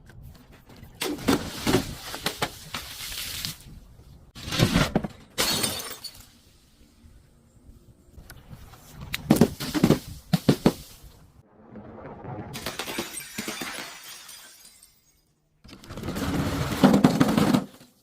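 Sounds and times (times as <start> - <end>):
glass bottle shattering: 5.4 - 6.4, 12.6 - 15.4.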